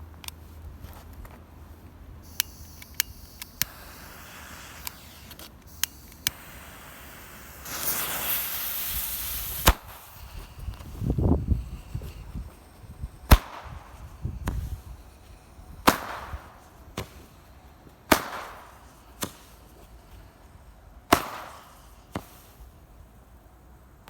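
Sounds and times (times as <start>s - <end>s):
firework bangs: 3.6s - 5.4s, 6.2s - 20.2s, 21.1s - 22.8s.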